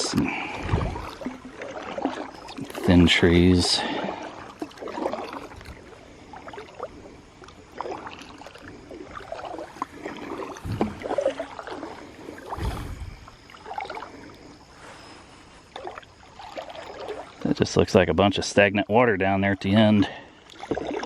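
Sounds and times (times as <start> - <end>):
paddle splashes and drips: 0.0 - 21.0
low thumps: 10.6 - 11.2.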